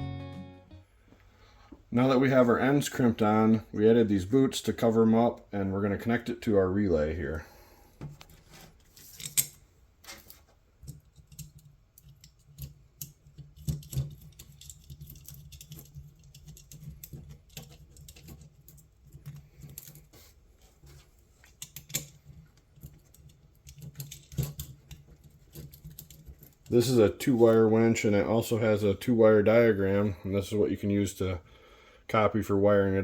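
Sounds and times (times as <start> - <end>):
small metal clicks and taps: 10.8 - 20.0, 21.4 - 26.7.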